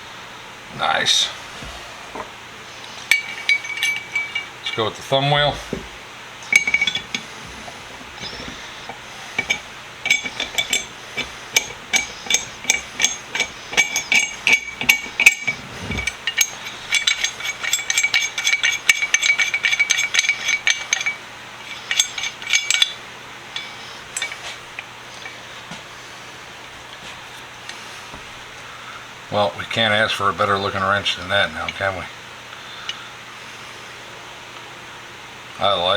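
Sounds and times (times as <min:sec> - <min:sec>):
light metal clicks and clinks: 0:02.9 - 0:25.4.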